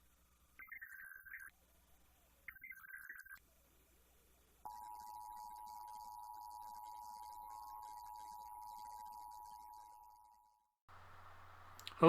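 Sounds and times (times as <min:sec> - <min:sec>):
buzzy digital data burst: 0:00.6 - 0:01.5, 0:04.7 - 0:10.0.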